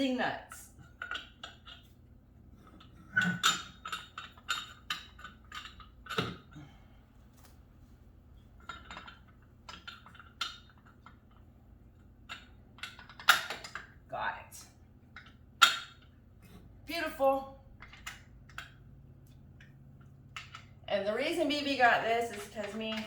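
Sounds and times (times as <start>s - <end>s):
metal hardware clinking: 2.6s - 6.6s.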